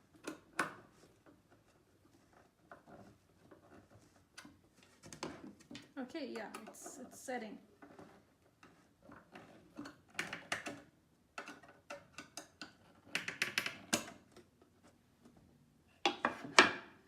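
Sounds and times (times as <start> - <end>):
wood panels tapping and knocking: 9.8 - 14.4, 16.1 - 17.0.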